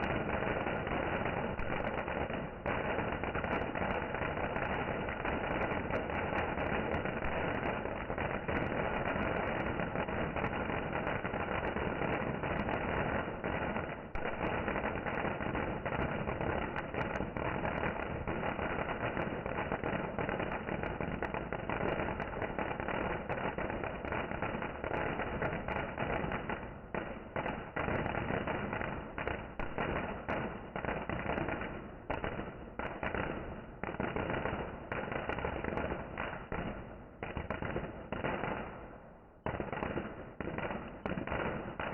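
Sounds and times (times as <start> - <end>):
fireworks crackling and banging: 0.0 - 41.9.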